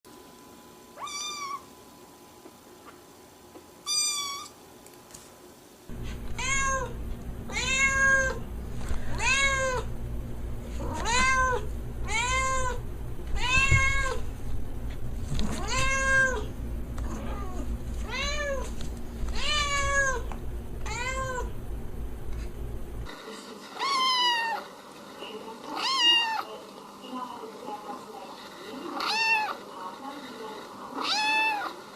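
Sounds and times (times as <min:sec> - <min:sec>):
cat meowing: 0:01.0 - 0:01.7, 0:03.8 - 0:04.6, 0:06.4 - 0:08.4, 0:09.2 - 0:09.9, 0:10.8 - 0:12.8, 0:13.4 - 0:14.2, 0:15.6 - 0:16.5, 0:17.1 - 0:18.6, 0:19.3 - 0:21.5, 0:23.8 - 0:24.7, 0:25.8 - 0:26.5, 0:29.0 - 0:29.6, 0:31.0 - 0:31.8
steady low hum: 0:05.8 - 0:23.3.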